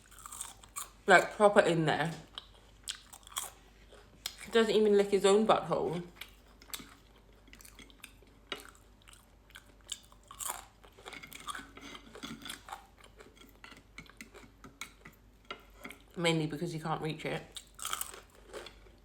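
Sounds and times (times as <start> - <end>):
person chewing crunchy food: 0.0 - 1.0, 2.3 - 4.6, 6.1 - 16.2, 17.5 - 19.0.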